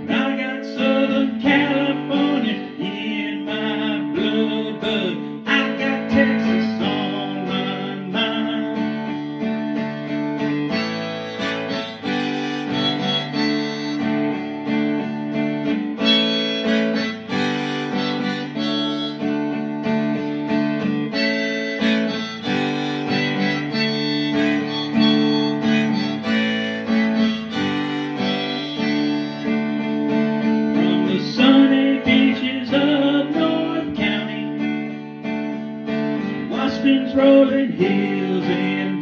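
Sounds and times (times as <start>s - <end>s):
harmonica playing melody: 0.0s - 38.9s
acoustic guitar strumming: 0.0s - 39.0s.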